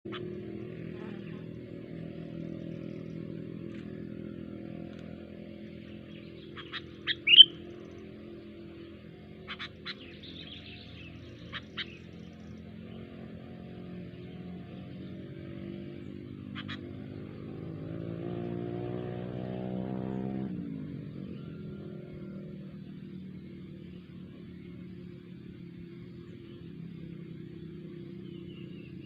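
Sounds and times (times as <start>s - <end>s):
steady low hum: 0.1s - 19.9s
songbird chirps: 0.1s - 29.0s.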